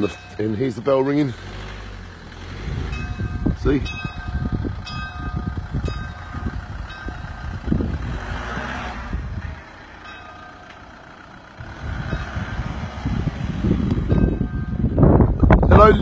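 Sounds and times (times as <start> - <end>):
wind rumble on microphone: 2.5 - 9.7, 11.6 - 16.0
church bell ringing: 3.0 - 7.4, 10.0 - 11.1.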